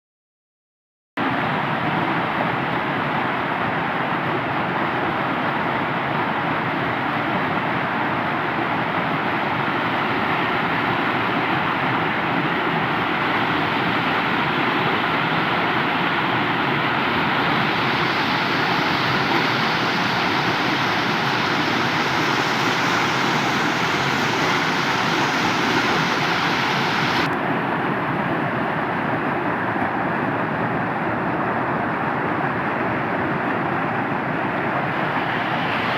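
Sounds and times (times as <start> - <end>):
waterfall rushing: 10.0 - 27.3, 34.8 - 35.9.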